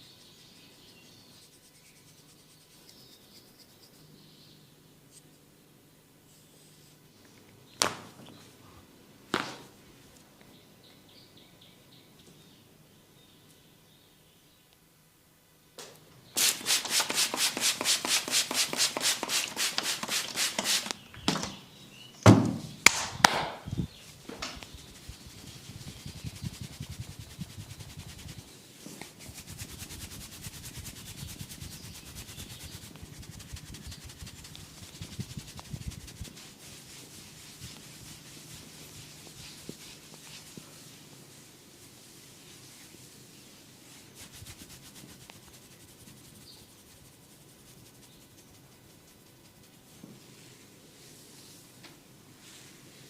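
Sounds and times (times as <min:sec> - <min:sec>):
hands rubbing hair: 0:16.4 - 0:21.0, 0:23.7 - 0:51.8, 0:52.4 - 0:53.0.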